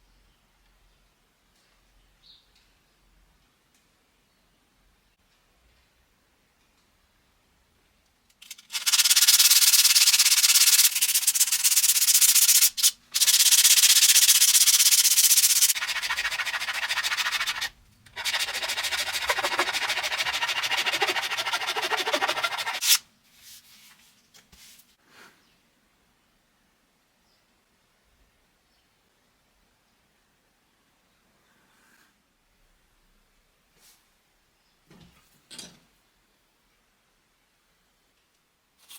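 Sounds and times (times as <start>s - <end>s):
wood being sanded: 8.8s - 23.0s.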